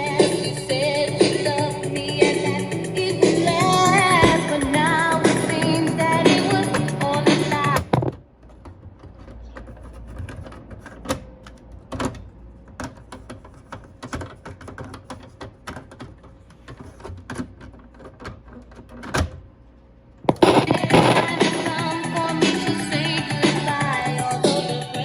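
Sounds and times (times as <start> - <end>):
radio clicks and crackles: 1.2 - 8.2, 20.3 - 22.4.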